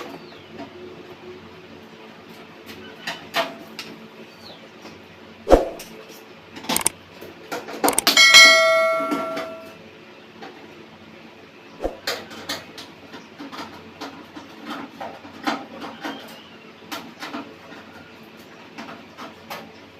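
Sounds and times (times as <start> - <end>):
metal knocks and clicks: 6.7 - 6.9, 7.8 - 9.7
loud metallic clang: 7.9 - 9.7.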